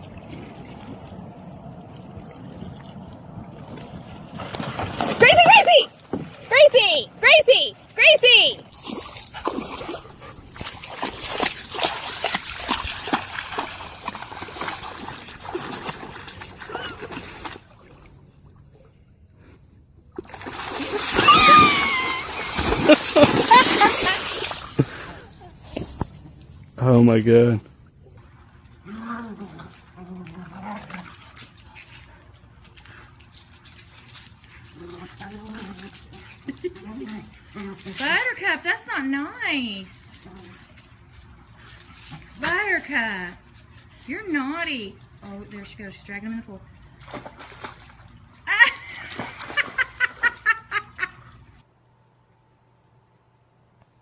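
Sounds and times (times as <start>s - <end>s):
water splashing and sloshing: 0.0s - 53.4s
dog whining: 21.1s - 22.6s.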